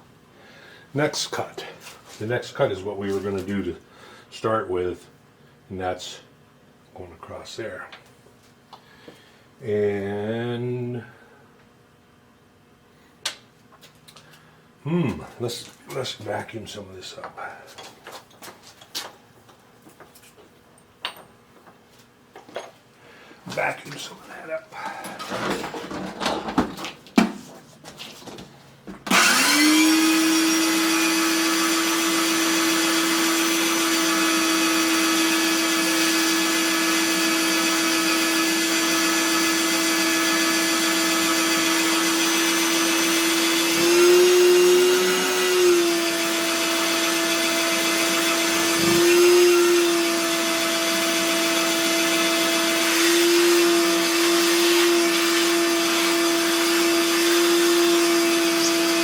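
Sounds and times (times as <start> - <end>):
vacuum cleaner motor running: 29.1 - 59.0.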